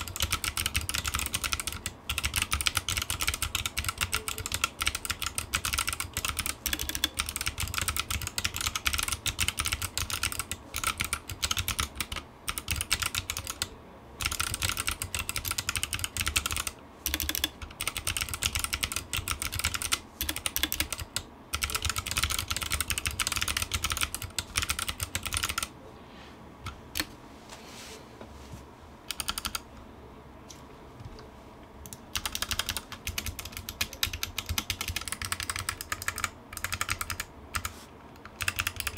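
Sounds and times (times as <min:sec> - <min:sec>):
fast typing on clicky keyboard: 0:00.0 - 0:25.7, 0:29.1 - 0:29.6, 0:31.9 - 0:38.9.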